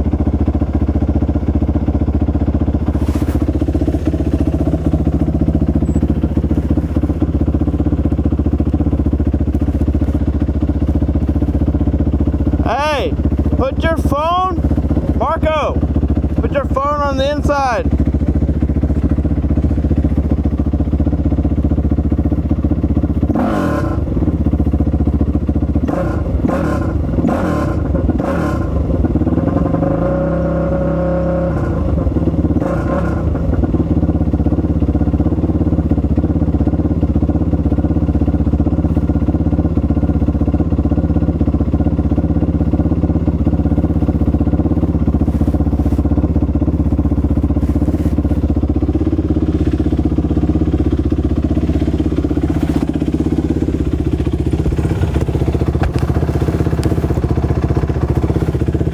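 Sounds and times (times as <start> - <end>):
off-road motorcycle engine revving: 0.0 - 58.9.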